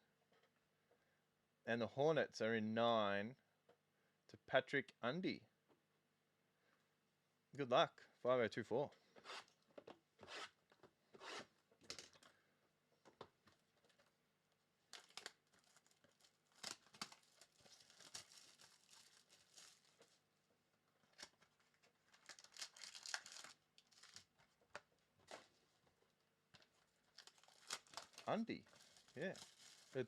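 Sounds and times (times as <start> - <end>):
plastic wrapping crinkling and tearing: 14.9 - 20.3, 21.0 - 24.6, 26.6 - 30.0.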